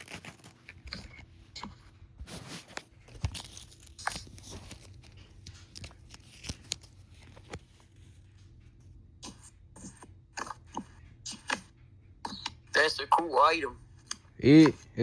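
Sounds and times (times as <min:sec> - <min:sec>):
packaging crinkling and tearing: 0:00.0 - 0:01.2, 0:02.8 - 0:07.8.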